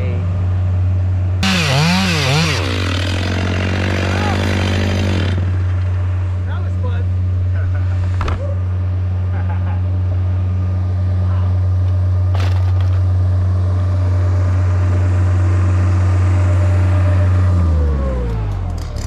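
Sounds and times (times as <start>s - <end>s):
engine running at high revs: 1.4s - 6.4s, 13.4s - 19.0s.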